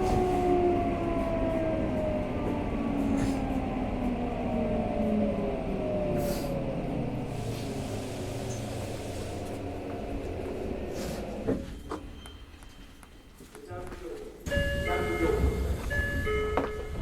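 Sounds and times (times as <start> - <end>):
train motors whining: 0.0 - 12.7
wheels rumbling on rail: 0.0 - 17.0.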